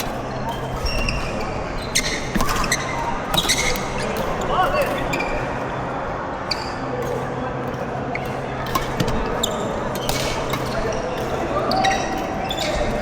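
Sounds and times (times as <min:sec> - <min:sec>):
racket hitting shuttlecock: 0:00.0 - 0:05.2, 0:08.3 - 0:13.0
court shoes squeaking: 0:00.0 - 0:13.0.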